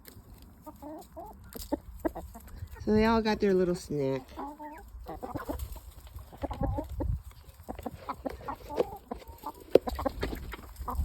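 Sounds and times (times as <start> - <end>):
chickens clucking: 0.0 - 11.0.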